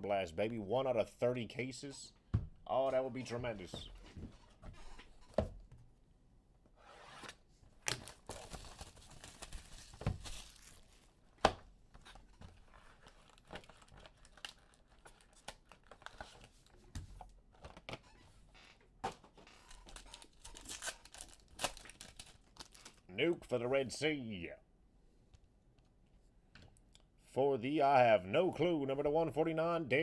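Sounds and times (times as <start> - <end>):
foil wrappers tearing and crinkling: 7.9 - 11.1, 12.7 - 16.5, 19.5 - 23.0.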